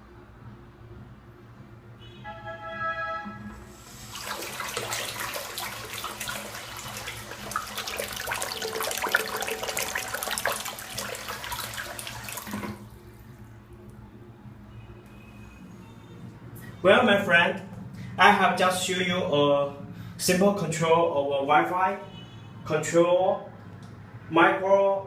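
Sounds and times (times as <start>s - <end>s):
water gushing and splashing: 3.8s - 13.1s.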